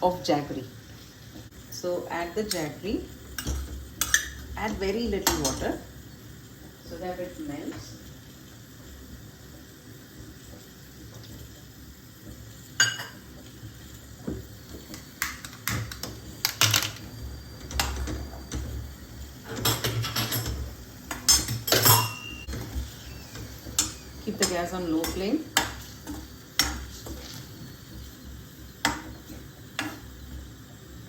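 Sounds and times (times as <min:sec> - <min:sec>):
metal vessel and spoon clinking: 0:21.3 - 0:22.4.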